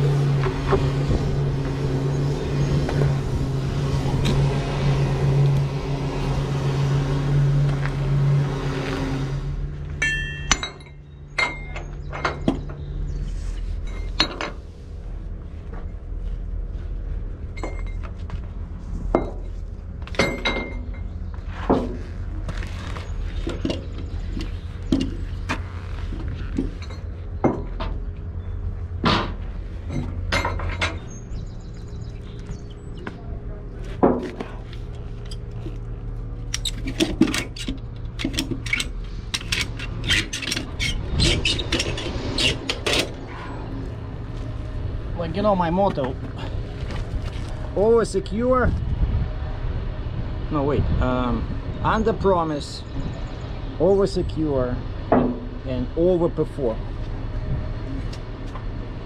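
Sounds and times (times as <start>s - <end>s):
low steady hum: 0.0s - 59.0s
vehicle engine running: 0.0s - 59.0s
metal chains clinking: 10.0s - 12.3s.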